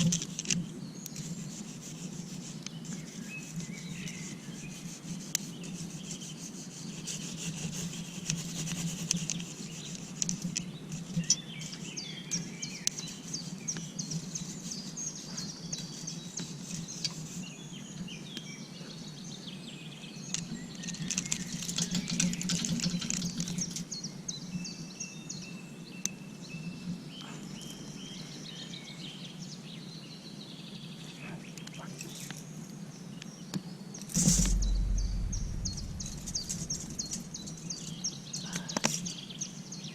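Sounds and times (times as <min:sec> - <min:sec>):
low steady rustle: 0:34.2 - 0:38.0
birds chirping: 0:34.2 - 0:39.6.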